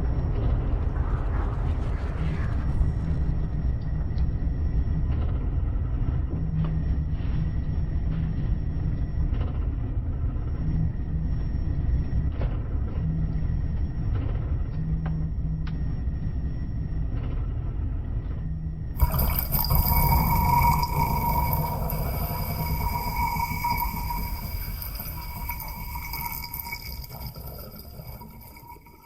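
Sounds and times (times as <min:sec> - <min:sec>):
steady deep rumble: 0:00.0 - 0:12.0.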